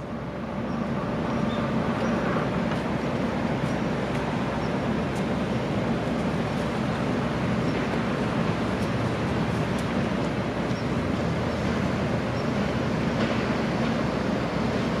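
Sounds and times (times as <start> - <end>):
train wheels rumbling on rails: 0.0 - 15.0.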